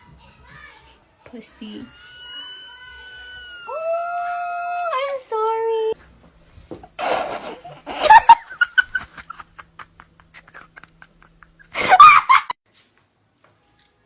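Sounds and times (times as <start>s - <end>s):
person laughing: 7.0s - 12.5s.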